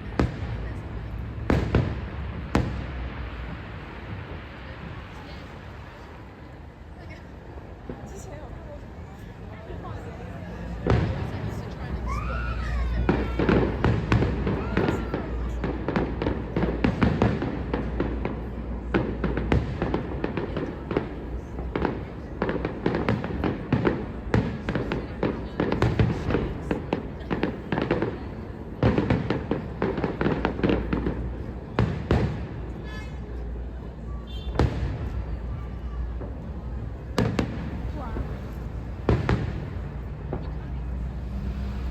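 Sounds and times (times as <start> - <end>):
loud firework reports: 0.0 - 6.6, 9.8 - 33.4, 34.1 - 41.9
fireworks bangs and crackles: 0.0 - 41.9.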